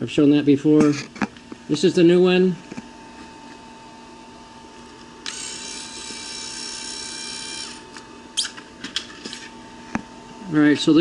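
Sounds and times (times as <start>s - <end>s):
small electric motor whining: 5.2s - 8.6s.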